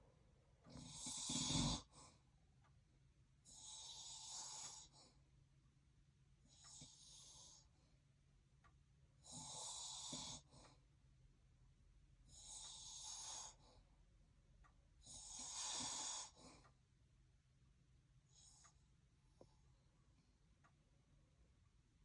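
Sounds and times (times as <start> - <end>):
man snoring: 0.8 - 1.9, 9.3 - 10.4, 15.2 - 16.4.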